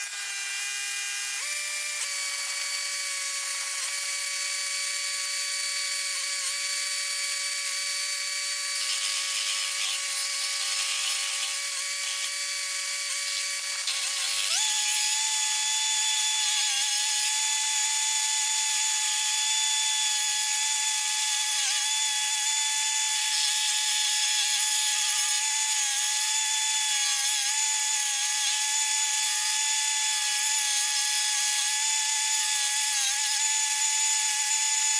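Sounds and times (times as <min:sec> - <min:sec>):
stump grinder mechanical whine: 0:00.0 - 0:27.0.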